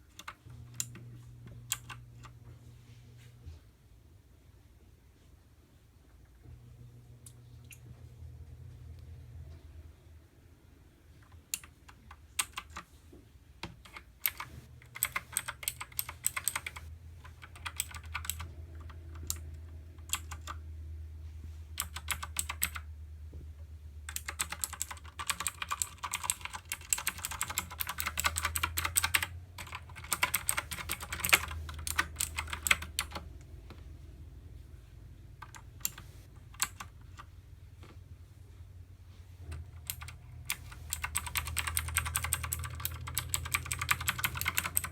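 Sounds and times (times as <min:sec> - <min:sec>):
clicky mechanical keyboard typing: 0:00.0 - 0:01.0, 0:01.7 - 0:02.4, 0:11.2 - 0:12.9, 0:13.6 - 0:20.6, 0:21.8 - 0:22.9, 0:24.1 - 0:33.3, 0:35.4 - 0:37.3, 0:39.5 - 0:44.9
faint low hum: 0:00.0 - 0:44.9.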